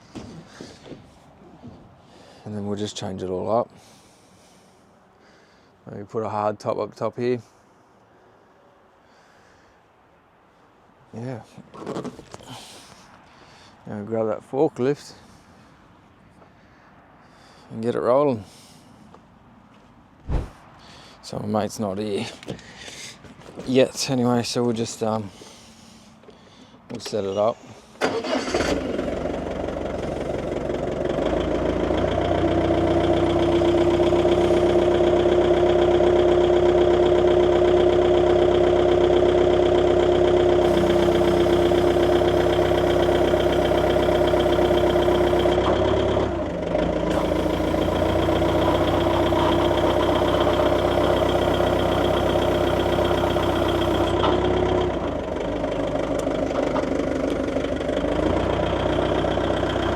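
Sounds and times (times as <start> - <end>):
forklift engine idling: 28.0 - 59.9
steady whine: 40.5 - 45.7, 47.1 - 54.3.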